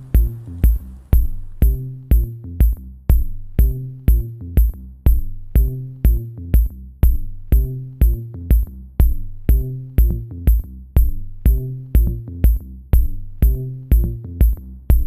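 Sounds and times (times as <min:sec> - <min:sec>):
electronic music: 0:00.0 - 0:04.8.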